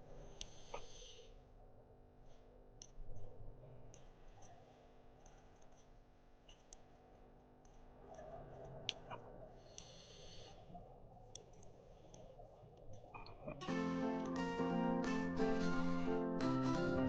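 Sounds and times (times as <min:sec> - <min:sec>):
sharp underwater clicks and crackles: 0:07.6 - 0:13.6.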